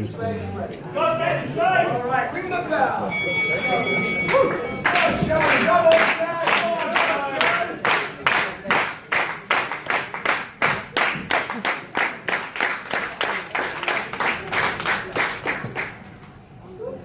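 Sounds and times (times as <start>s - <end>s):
hands clapping rhythmically: 4.3s - 16.1s.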